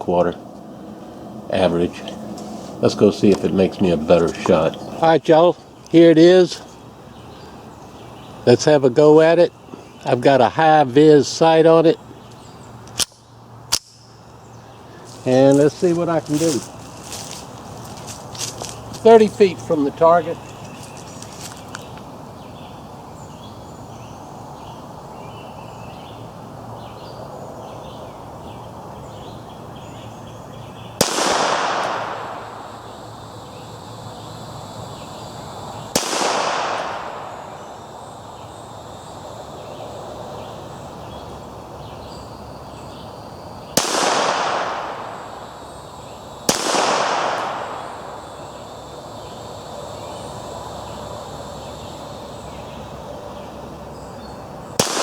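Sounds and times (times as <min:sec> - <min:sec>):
pistol shots: 0:31.0 - 0:32.6, 0:35.9 - 0:37.6, 0:43.8 - 0:45.2, 0:46.5 - 0:48.1, 0:54.8 - 0:55.0.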